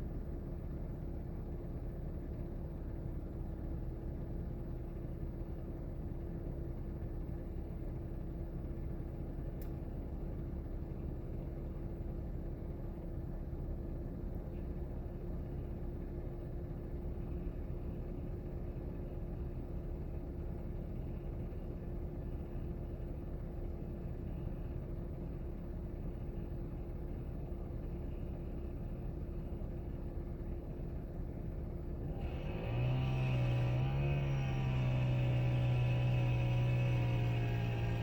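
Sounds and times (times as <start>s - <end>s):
engine rumbling steadily: 0.0s - 38.0s
louder engine revving: 32.1s - 38.0s.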